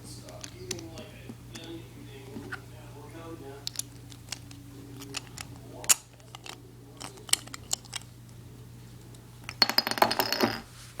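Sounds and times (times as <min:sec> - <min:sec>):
small plastic parts clicking: 0:03.6 - 0:08.1.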